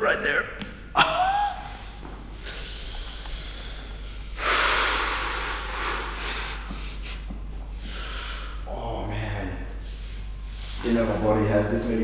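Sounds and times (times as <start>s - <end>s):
man breathing hard: 1.3s - 8.7s.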